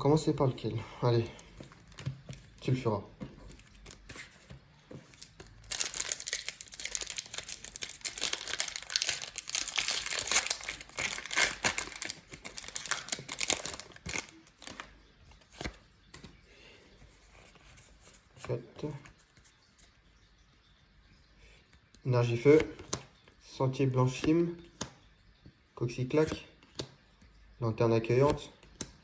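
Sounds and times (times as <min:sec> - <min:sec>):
foil wrapper crinkling and tearing: 0:05.1 - 0:14.9.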